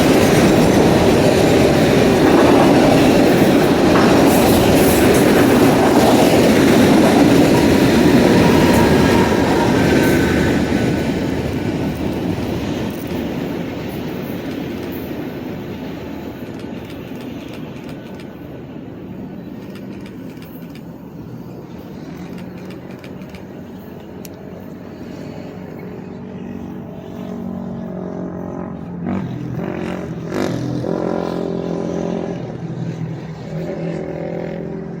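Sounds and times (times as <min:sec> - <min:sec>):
freight train cars rolling: 0:00.0 - 0:27.0
road vehicle engine hum: 0:00.0 - 0:35.0.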